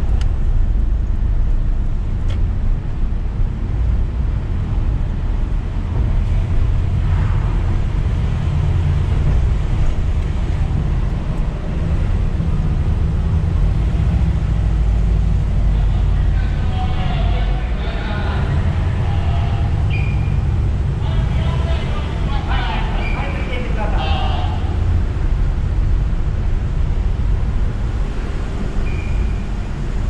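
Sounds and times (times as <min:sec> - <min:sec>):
car engine and tyre noise: 0:00.0 - 0:30.0.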